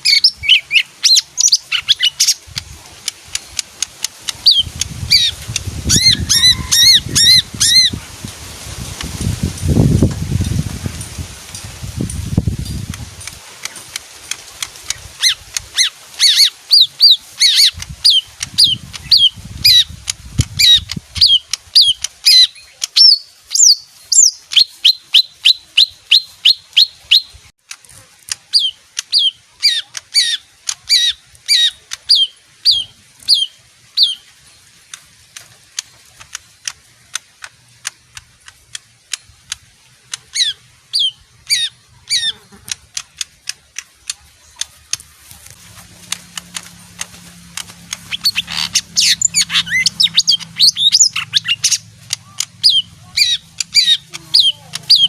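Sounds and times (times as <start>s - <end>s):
bird singing sliding notes: 0.0s - 8.0s, 28.4s - 55.0s.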